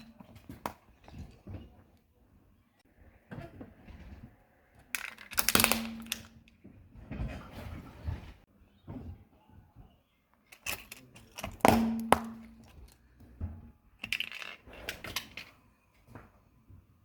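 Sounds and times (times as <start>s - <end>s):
objects cracking under car tyre: 4.0s - 6.7s.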